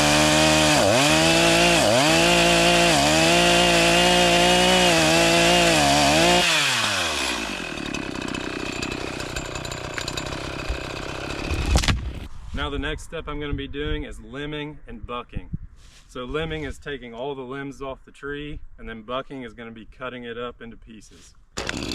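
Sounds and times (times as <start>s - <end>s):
chainsaw cutting wood: 0.0s - 12.3s, 21.6s - 21.9s.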